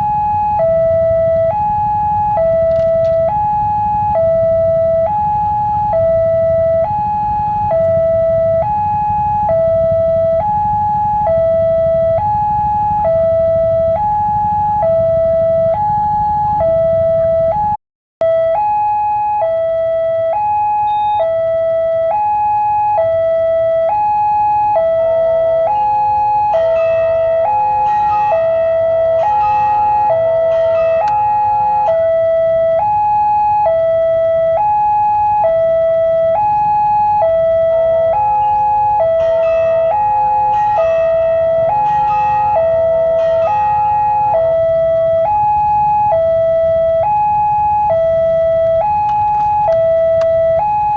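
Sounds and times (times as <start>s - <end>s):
level crossing two-tone alarm: 0.0s - 50.9s
extra tones: 19.4s - 22.2s.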